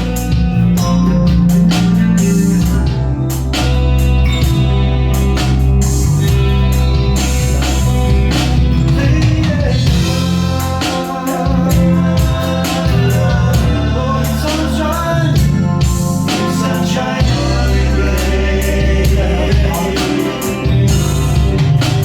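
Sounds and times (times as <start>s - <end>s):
rock band playing: 0.0s - 22.0s
person singing: 8.8s - 22.0s.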